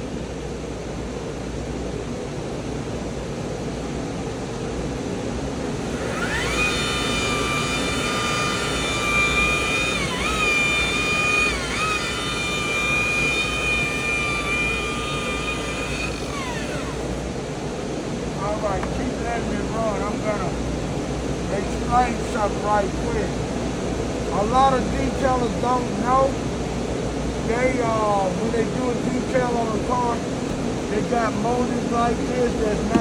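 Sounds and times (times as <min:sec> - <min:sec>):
steady background hum: 0:00.0 - 0:33.0
car polisher whining: 0:05.6 - 0:17.5, 0:32.5 - 0:33.0.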